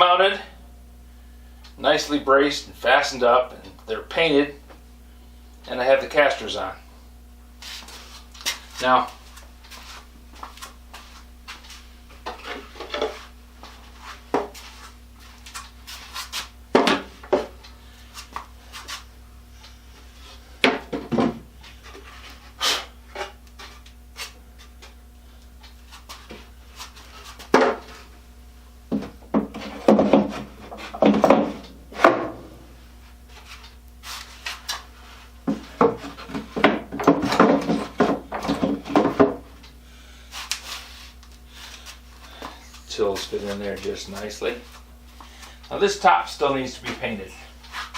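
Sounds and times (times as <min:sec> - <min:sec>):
wood knocking on wood: 0:28.9 - 0:32.5, 0:35.5 - 0:39.4.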